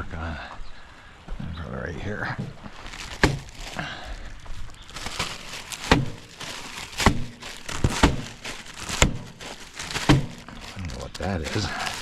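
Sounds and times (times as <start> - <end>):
frozen block thudding on surface: 2.4 - 3.8, 5.0 - 10.7.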